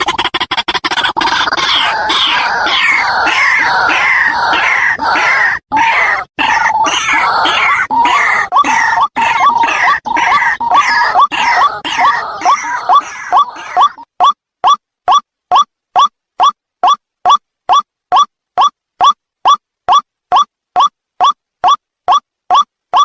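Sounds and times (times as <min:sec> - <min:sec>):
harsh rising bird calls: 0:00.8 - 0:14.1.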